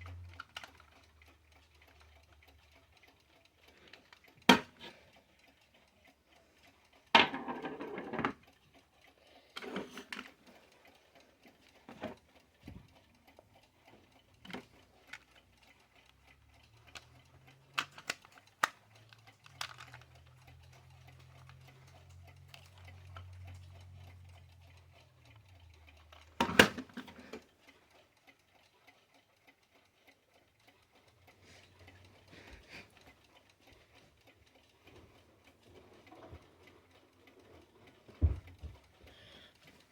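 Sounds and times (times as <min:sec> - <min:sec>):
clicks and knocks: 0:07.2 - 0:08.4.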